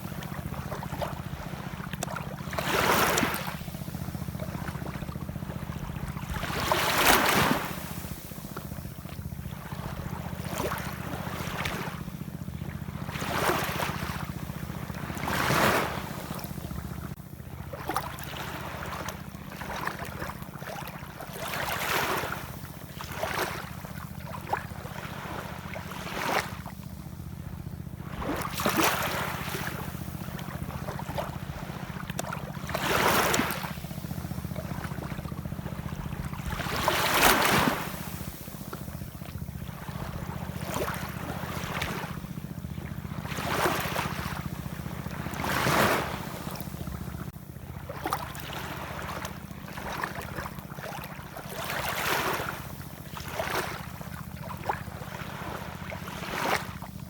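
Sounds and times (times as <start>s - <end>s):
ocean waves washing in: 0.0s - 17.2s, 28.0s - 56.7s
steady low rumble: 26.7s - 50.6s.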